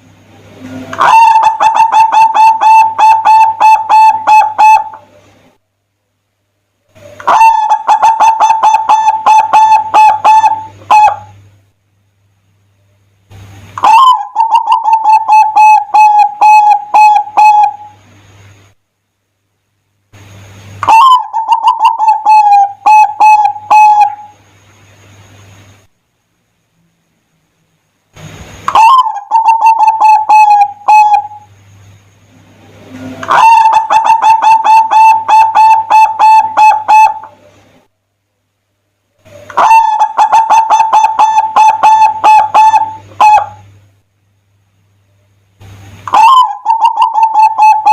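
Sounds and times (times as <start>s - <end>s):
dove cooing: 0.7s - 5.4s, 6.9s - 11.4s, 13.8s - 18.0s, 20.8s - 24.4s, 28.7s - 31.5s, 32.6s - 37.7s, 39.2s - 43.7s, 46.0s - 47.9s
low hum: 8.6s - 40.2s
faint hiss: 10.1s - 35.2s, 42.9s - 47.0s.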